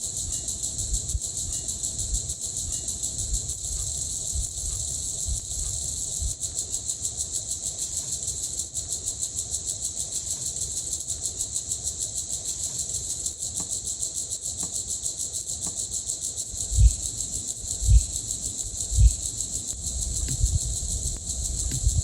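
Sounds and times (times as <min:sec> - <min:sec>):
dull low thumps: 0:16.6 - 0:22.0
pulsing high-pitched drone: 0:17.8 - 0:22.0.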